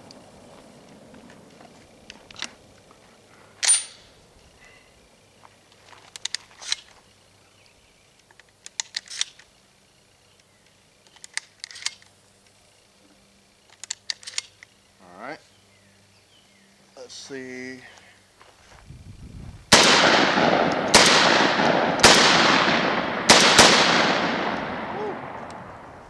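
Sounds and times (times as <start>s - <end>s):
shotgun blast echo: 19.7s - 25.9s.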